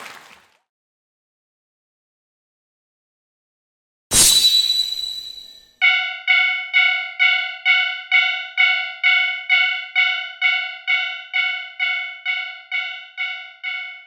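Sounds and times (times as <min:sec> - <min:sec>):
railroad crossing warning bell: 0:04.4 - 0:14.0.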